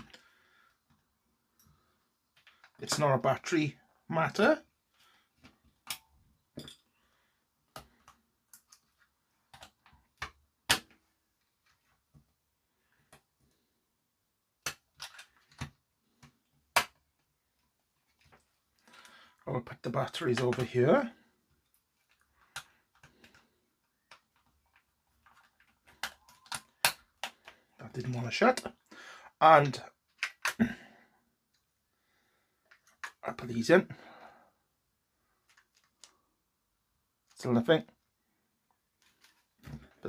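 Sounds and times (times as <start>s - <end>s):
battery cover opening: 30.1s - 30.7s.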